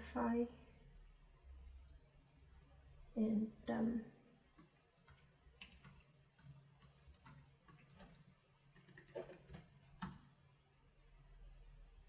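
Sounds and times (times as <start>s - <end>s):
keyboard typing: 4.5s - 10.3s.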